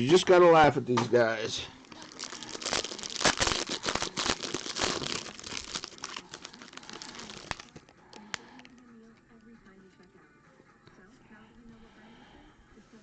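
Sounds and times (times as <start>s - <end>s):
plastic wrapping crinkling and tearing: 1.8s - 8.3s.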